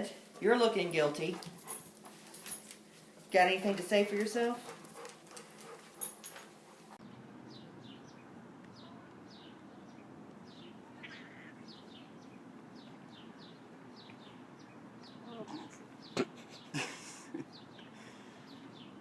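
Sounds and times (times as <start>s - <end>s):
low background noise: 0.0s - 19.0s
small bird chirping: 7.5s - 16.7s.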